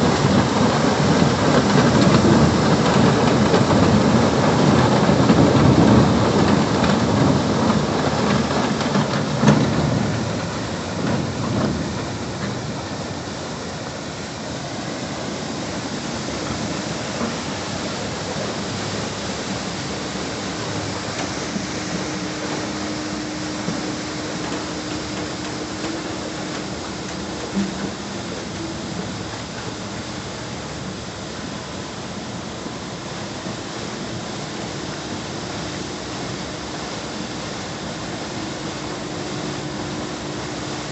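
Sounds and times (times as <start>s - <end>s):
dredger rushing rumble: 0.0s - 40.9s
steady hum: 9.4s - 40.9s.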